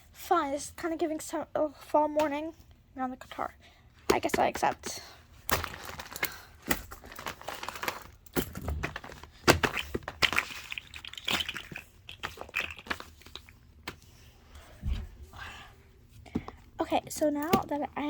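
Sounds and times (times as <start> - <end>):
plastic crinkling and rustling: 5.4 - 14.1.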